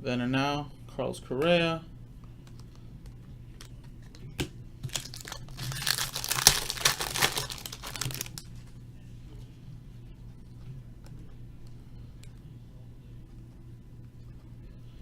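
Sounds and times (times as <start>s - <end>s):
foil wrapper crinkling and tearing: 4.8s - 8.6s.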